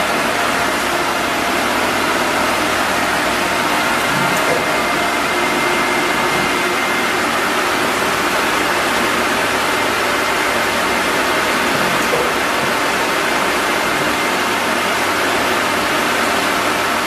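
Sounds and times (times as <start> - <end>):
wood lathe running: 0.0 - 16.9.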